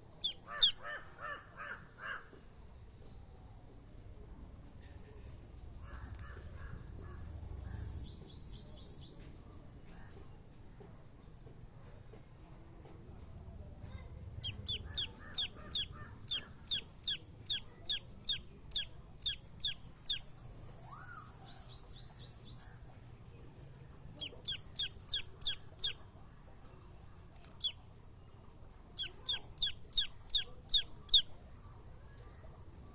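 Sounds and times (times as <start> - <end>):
chicks peeping: 0.2 - 0.8, 14.4 - 21.0, 24.2 - 26.0, 27.4 - 27.8, 29.0 - 31.2.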